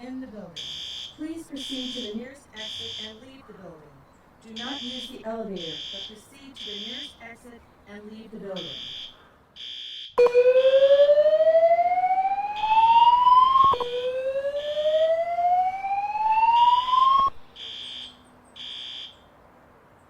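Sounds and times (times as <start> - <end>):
fire alarm whoop tone: 0.6 - 2.1, 4.6 - 7.1, 8.6 - 19.2
high-pitched alarm beeps: 0.6 - 3.2, 4.5 - 7.2, 8.6 - 19.2.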